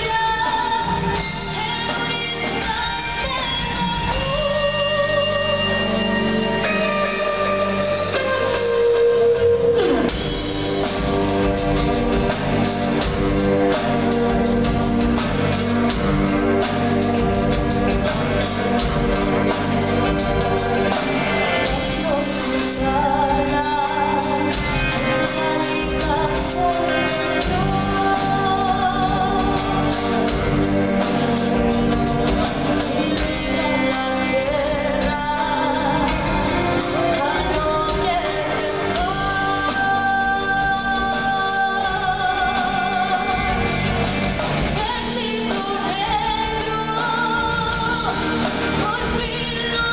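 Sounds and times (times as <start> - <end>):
live rock band playing: 0.0 - 49.9
person singing: 13.2 - 49.9.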